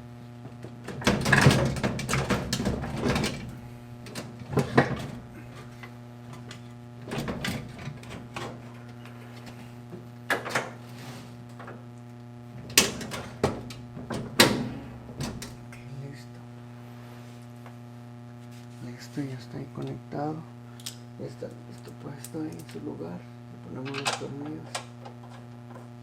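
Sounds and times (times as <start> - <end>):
steady low hum: 0.0 - 26.0
clunks and rattles of parts: 0.4 - 9.6, 12.6 - 15.6.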